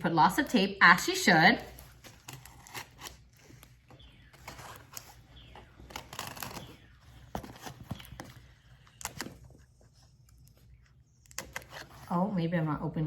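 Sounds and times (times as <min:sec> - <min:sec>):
packing tape tearing: 0:01.9 - 0:03.4, 0:05.8 - 0:08.2.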